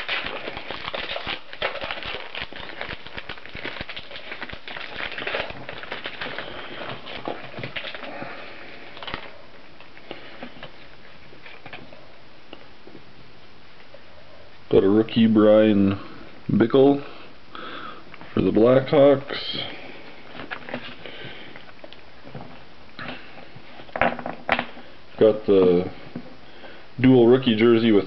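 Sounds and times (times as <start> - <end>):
cards rustling and clicking: 0.0 - 9.3
wrapper crinkling: 0.0 - 11.9.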